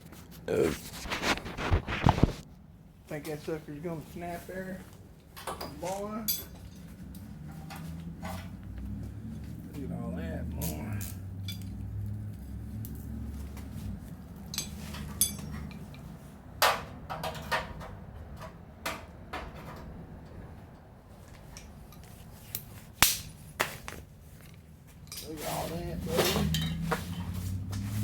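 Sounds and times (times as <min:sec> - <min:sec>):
metal tools clinking: 0:05.4 - 0:09.1, 0:10.6 - 0:12.2, 0:12.8 - 0:16.2, 0:21.4 - 0:23.4, 0:24.4 - 0:27.4
low hum: 0:06.3 - 0:16.0.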